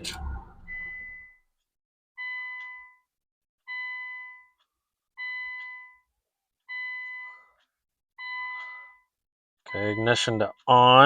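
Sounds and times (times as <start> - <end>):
car warning chime dinging: 8.2 - 9.1, 9.7 - 11.0.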